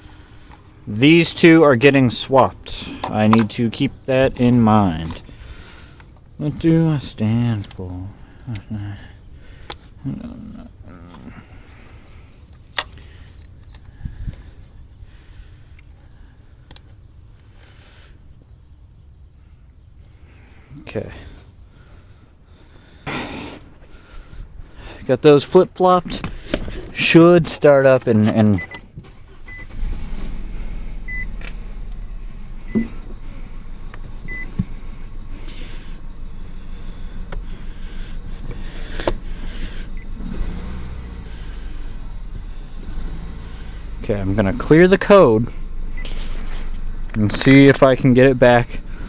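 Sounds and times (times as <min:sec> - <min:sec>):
car engine starting and idling: 0:00.0 - 0:17.4, 0:22.6 - 0:49.0
low steady rumble: 0:00.0 - 0:17.4, 0:28.6 - 0:49.0
dashboard warning chime beeps: 0:28.6 - 0:28.8, 0:29.5 - 0:29.8, 0:31.1 - 0:31.4, 0:32.6 - 0:33.0, 0:34.2 - 0:34.6, 0:45.7 - 0:46.2
dull thumps: 0:31.0 - 0:49.0.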